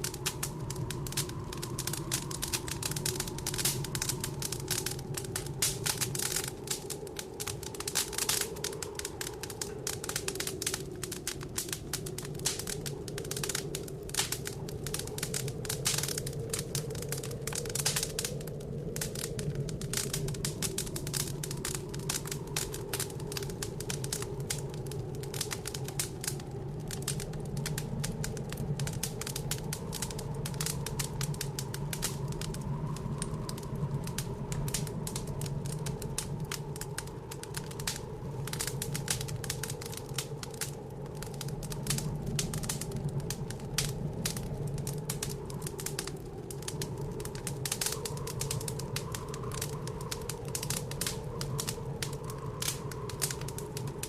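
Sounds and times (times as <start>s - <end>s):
howling wind: 0.0s - 54.0s
wood fire crackling: 0.0s - 54.0s.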